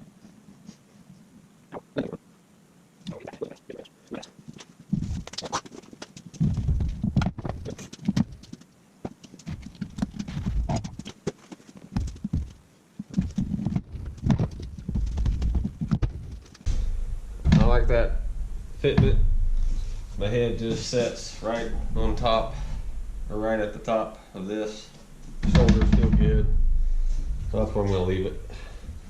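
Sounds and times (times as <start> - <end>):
rustling: 4.4 - 29.0
knocks and thuds on seat: 12.0 - 16.4, 25.4 - 27.5.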